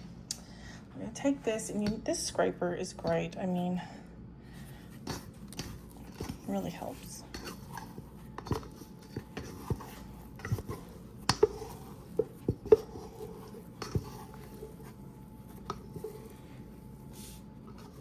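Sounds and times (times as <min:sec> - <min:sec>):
dough scraper scraping bowl: 0:04.9 - 0:18.0
scraper knocking against bowl: 0:05.0 - 0:15.0.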